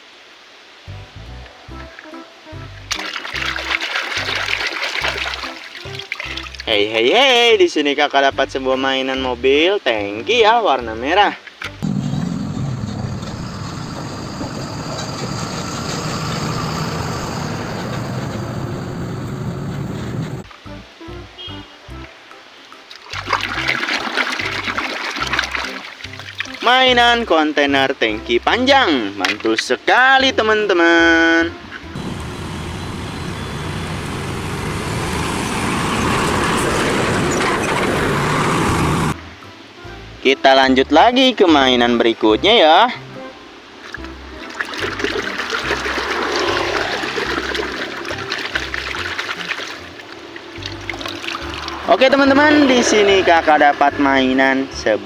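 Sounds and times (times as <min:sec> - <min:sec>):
truck engine rumbling: 0:11.8 - 0:20.5, 0:32.0 - 0:39.2.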